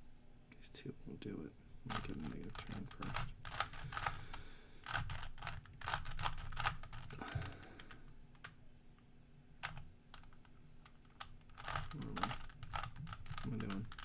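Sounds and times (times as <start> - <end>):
puzzle cube clicks being twisted: 1.9 - 4.2, 9.6 - 14.0.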